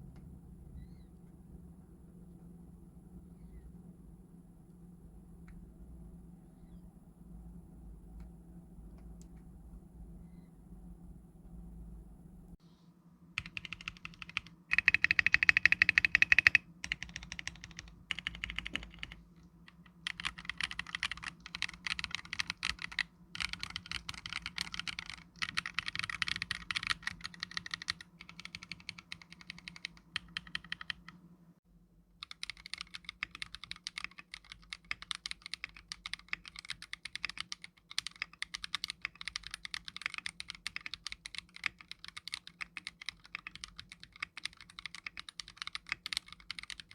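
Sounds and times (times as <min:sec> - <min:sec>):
mechanical keyboard typing: 0:13.4 - 0:31.2, 0:32.2 - 0:46.9.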